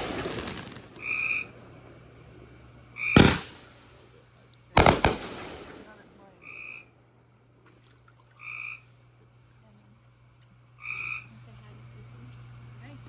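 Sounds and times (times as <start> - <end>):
frog calling: 1.0 - 1.5, 3.0 - 3.7, 6.4 - 7.0, 8.3 - 9.0, 10.8 - 11.4.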